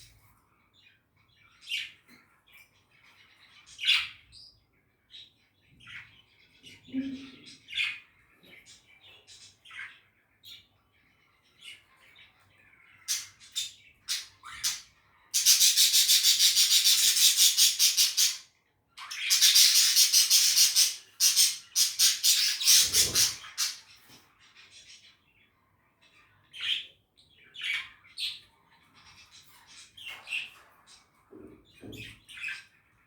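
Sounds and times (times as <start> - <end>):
budgies chirping: 0.0 - 33.0
harsh scratchy bird pulses: 19.2 - 23.8.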